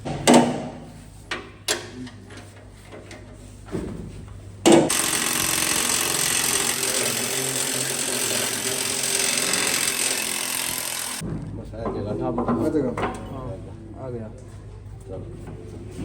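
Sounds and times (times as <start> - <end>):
power tool whirring: 4.9 - 11.2.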